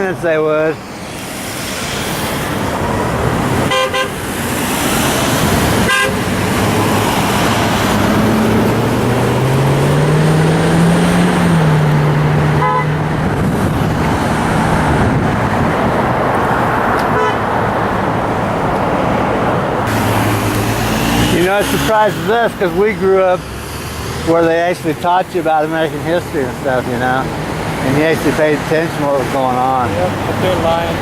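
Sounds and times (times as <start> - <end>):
freeway traffic rushing: 0.0 - 31.0
vehicle engine drone passing: 0.0 - 31.0
car horn toots: 3.7 - 4.2, 5.8 - 6.3, 12.5 - 13.1, 17.0 - 17.5, 19.9 - 22.3.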